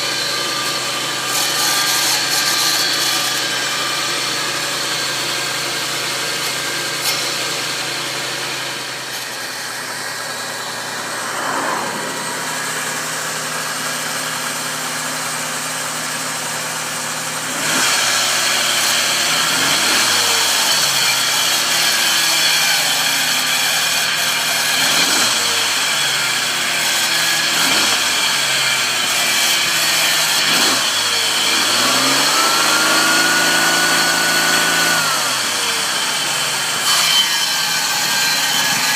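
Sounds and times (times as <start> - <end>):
engine revving: 7.7 - 15.6, 17.4 - 21.3, 24.6 - 36.8
high whine: 8.9 - 15.0.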